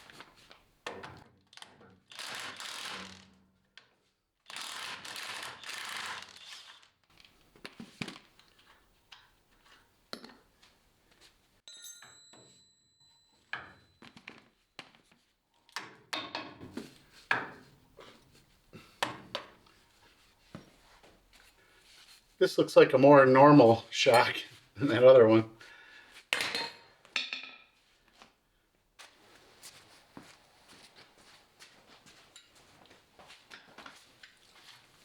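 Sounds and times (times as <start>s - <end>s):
hand ratchet working: 2.2s - 3.2s, 4.5s - 6.8s.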